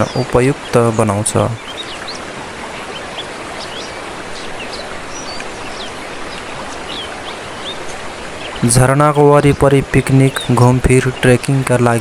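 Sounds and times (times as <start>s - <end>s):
water rushing: 0.0s - 12.0s
high bird chirps: 8.0s - 11.5s.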